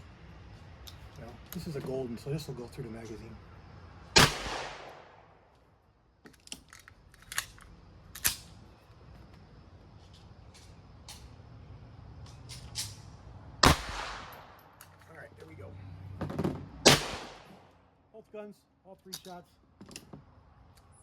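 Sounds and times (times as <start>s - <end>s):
pistol gunshot with echo: 4.2s - 5.3s, 13.6s - 14.6s, 16.8s - 17.7s
sharp cracks and clicks: 6.3s - 8.6s.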